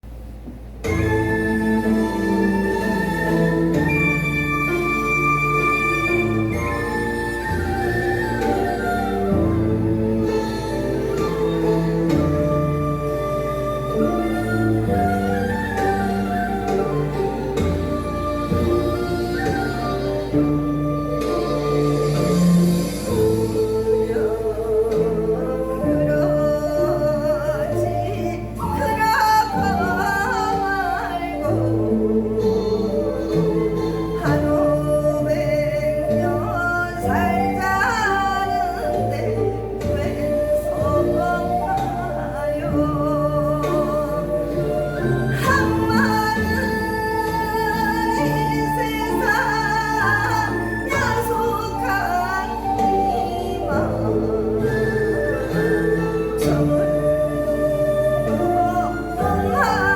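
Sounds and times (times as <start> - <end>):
instrumental accompaniment: 0.0 - 59.9
woman singing folk song: 22.8 - 59.9.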